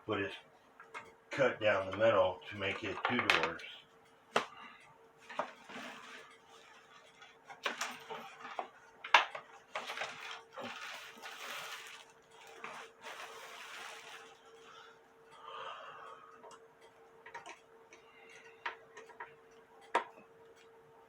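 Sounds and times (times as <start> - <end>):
faint steady hum: 0.0 - 21.0
rustling: 9.8 - 14.6.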